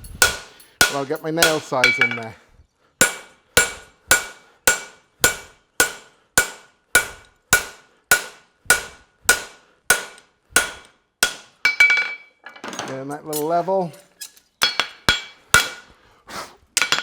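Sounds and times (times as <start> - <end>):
hammer striking metal on anvil: 0.0 - 2.3, 3.0 - 12.3, 14.6 - 15.9.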